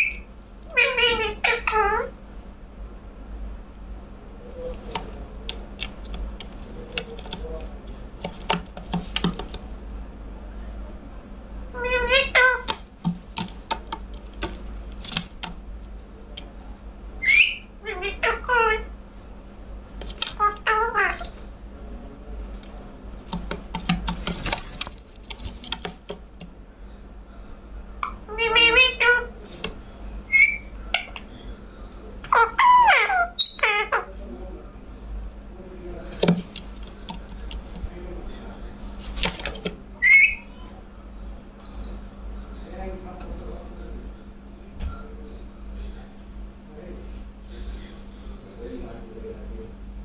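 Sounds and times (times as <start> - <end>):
low steady hum: 0.0 - 50.0
light irregular clicks and taps: 4.8 - 9.6
sharp clicks: 8.2 - 9.6.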